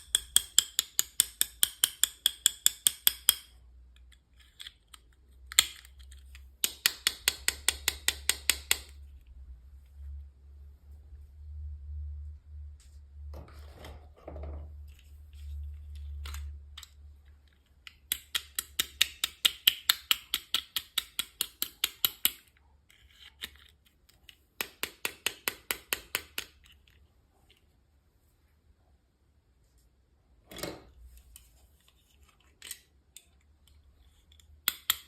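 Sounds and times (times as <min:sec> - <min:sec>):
soft handling rustle: 0:30.9 - 0:34.4.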